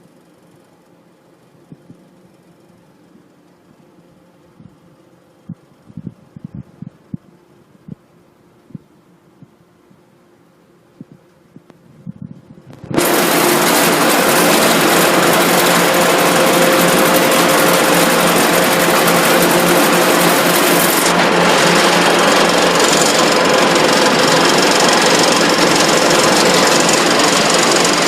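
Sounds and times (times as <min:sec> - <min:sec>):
machinery rattling: 0:12.8 - 0:28.0.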